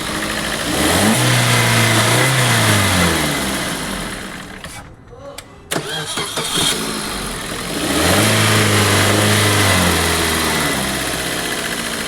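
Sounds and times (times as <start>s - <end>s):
car engine idling: 0.0s - 4.8s, 5.7s - 12.0s
starter motor cranking: 5.7s - 12.0s.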